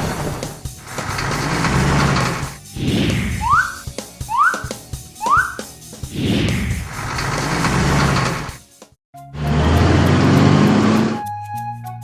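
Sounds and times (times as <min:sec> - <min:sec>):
rising whistle glides: 0:03.4 - 0:05.6.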